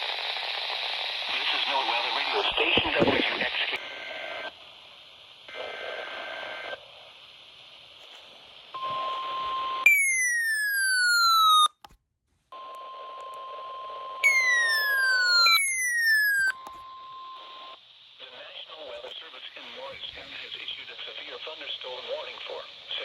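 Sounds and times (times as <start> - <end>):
radio static: 0.0 - 4.6, 5.5 - 7.1, 17.4 - 23.0
electronic tone sweeping down: 14.2 - 16.6
short data bursts: 14.2 - 16.7
steady warning alarm tone: 14.2 - 16.7.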